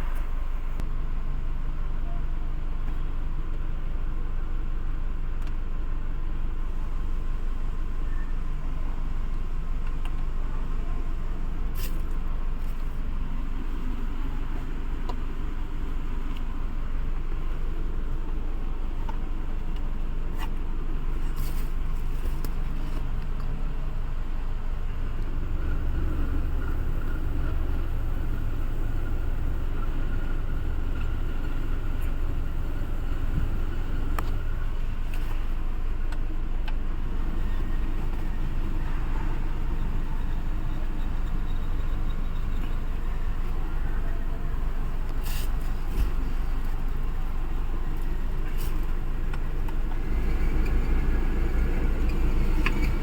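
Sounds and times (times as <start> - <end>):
car engine idling: 0.0 - 53.0
faint steady whine: 0.0 - 53.0.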